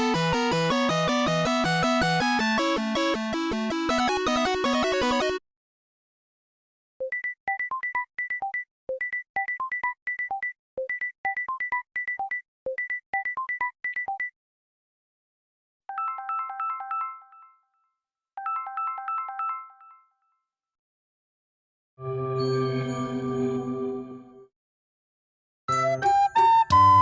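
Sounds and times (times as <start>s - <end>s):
chiming phone melody: 15.9s - 17.8s, 18.4s - 20.2s.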